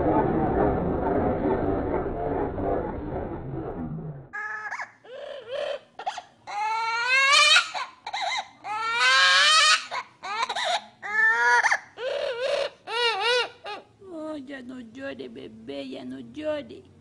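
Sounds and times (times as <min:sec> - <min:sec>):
high-pitched wailing cries: 0:04.4 - 0:05.8, 0:06.5 - 0:13.9.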